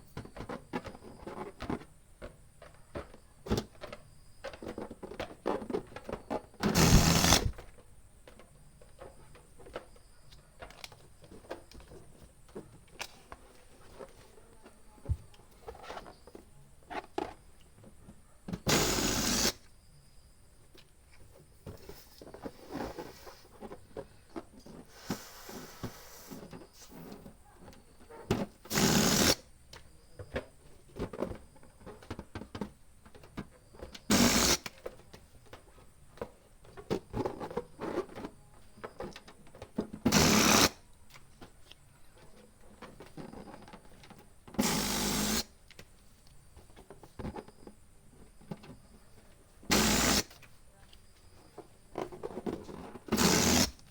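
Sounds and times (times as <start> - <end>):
balloons rustling and clicking: 0.1 - 16.4, 21.6 - 29.4, 51.8 - 53.9
balloon pump hissing: 6.6 - 7.6, 18.6 - 19.6, 24.9 - 27.0, 28.7 - 29.5, 34.1 - 34.7, 40.1 - 40.8, 44.6 - 45.6, 49.7 - 50.4, 53.1 - 53.9.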